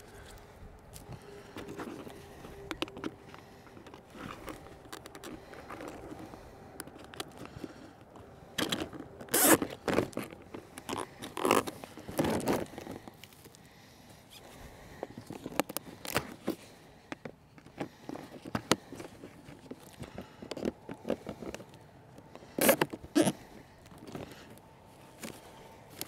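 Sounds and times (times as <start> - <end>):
zip ties ratcheting: 8.6 - 12.3.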